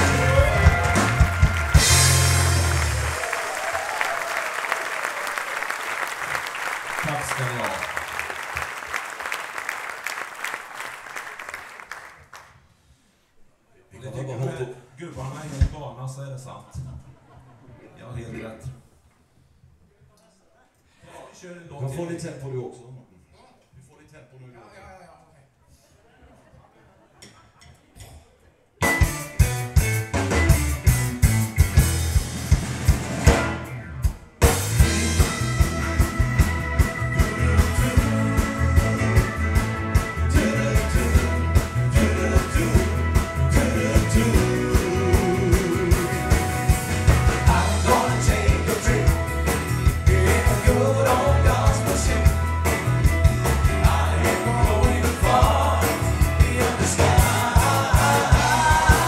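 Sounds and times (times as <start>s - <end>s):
person singing: 0.0s - 1.5s, 36.8s - 59.0s
drum kit fast beat: 0.0s - 3.2s, 28.8s - 59.0s
up-tempo band song: 0.0s - 3.8s, 28.8s - 59.0s.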